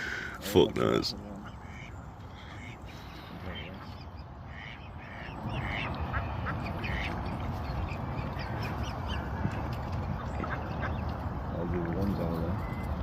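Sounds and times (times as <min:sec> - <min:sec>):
ducks quacking: 0:01.2 - 0:11.3.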